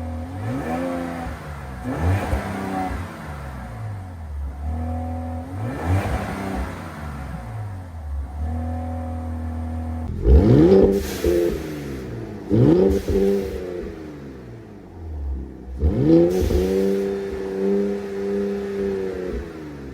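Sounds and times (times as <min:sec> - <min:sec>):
car engine idling and revving: 0:00.0 - 0:19.9.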